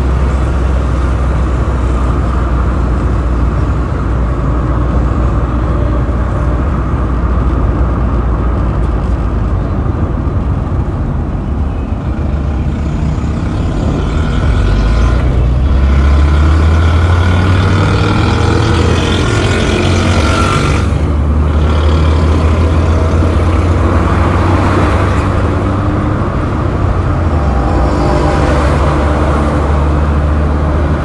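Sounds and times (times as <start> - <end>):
low vehicle rumble: 0.0 - 31.0
hiss of passing traffic: 11.2 - 31.0.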